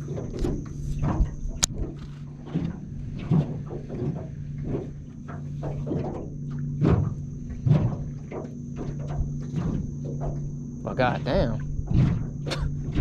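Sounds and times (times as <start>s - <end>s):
boat motor humming: 0.0s - 13.0s
knocks and slaps around boat: 0.0s - 13.0s.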